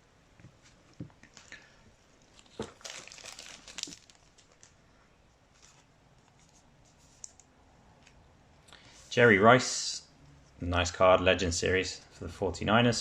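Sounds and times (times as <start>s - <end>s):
wrapper tearing and crinkling: 2.3s - 4.8s.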